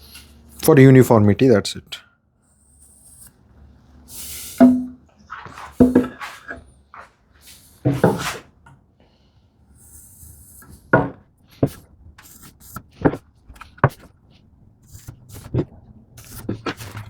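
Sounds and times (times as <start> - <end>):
wood clattering on a workbench: 4.6 - 7.1, 7.8 - 8.4, 10.9 - 11.8
wood scraping: 4.6 - 7.1, 7.8 - 8.4, 10.8 - 17.0.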